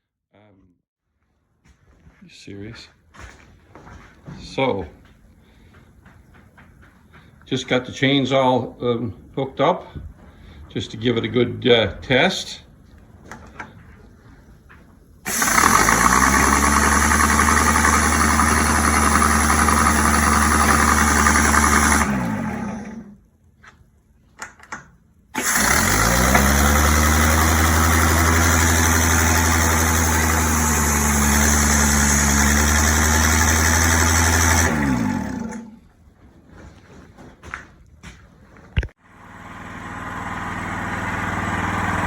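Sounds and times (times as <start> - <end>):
roller chain drive spinning: 15.3 - 23.1, 25.4 - 35.7.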